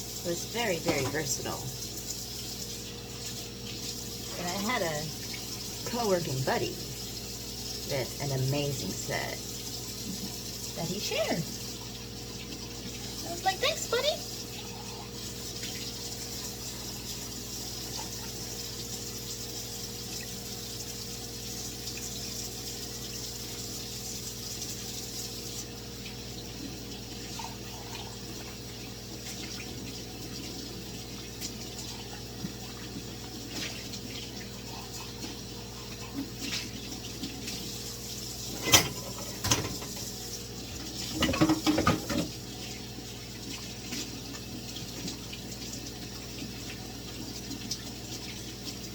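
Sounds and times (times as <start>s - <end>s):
tap running into a sink: 0.7s - 2.6s, 38.4s - 42.5s
dishes clinking: 38.5s - 40.1s, 41.1s - 42.3s.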